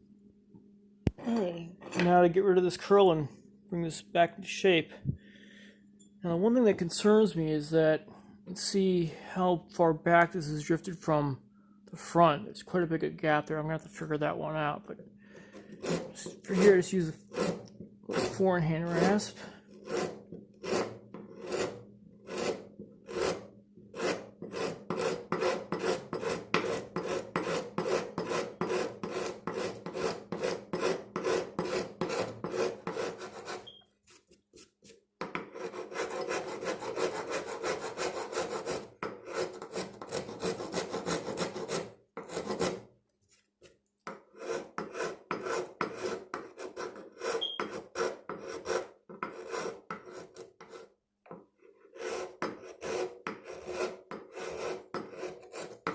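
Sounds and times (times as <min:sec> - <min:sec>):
rasp filing wooden handle: 0:15.6 - 0:34.2, 0:35.2 - 0:42.9, 0:44.1 - 0:51.0, 0:51.6 - 0:55.9.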